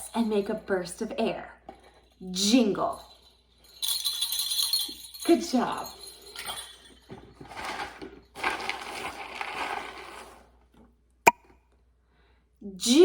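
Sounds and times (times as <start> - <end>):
dried beans rattling: 3.0 - 10.6.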